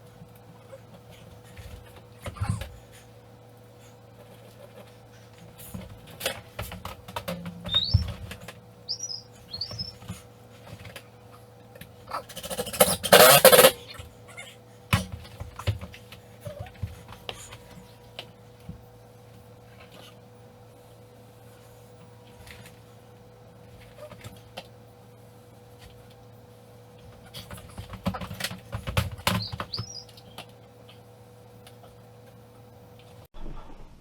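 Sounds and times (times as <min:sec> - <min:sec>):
electrical hum: 0:00.0 - 0:34.0
short high squeaks: 0:07.6 - 0:08.1, 0:08.9 - 0:10.0, 0:29.3 - 0:30.1.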